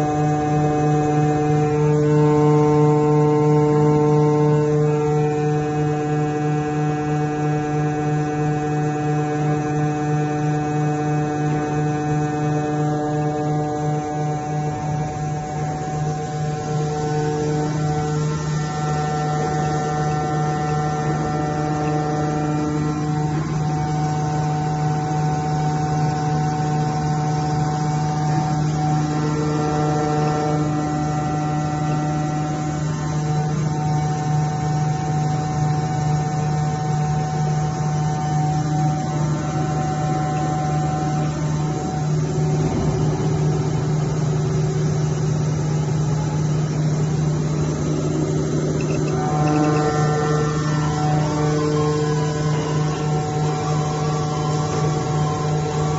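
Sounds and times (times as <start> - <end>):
high whining tones: 0.0 - 55.9
pump motor humming: 0.0 - 55.9.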